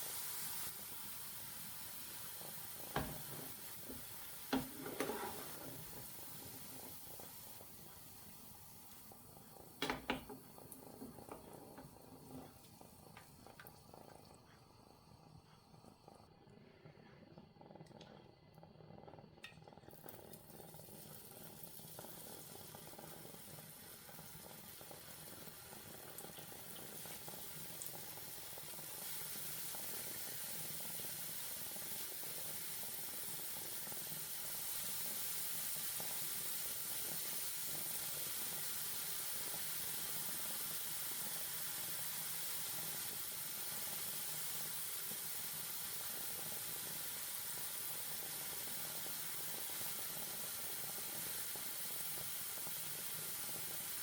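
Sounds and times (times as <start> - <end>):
batter sizzling in hot oil: 0.0 - 16.3, 19.1 - 54.0.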